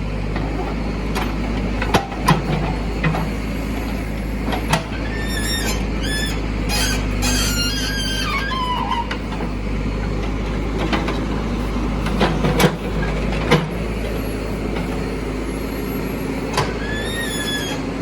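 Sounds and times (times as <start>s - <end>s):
diesel engine running: 0.0s - 18.0s
high-pitched metallic squeals: 5.0s - 9.2s, 16.8s - 17.9s.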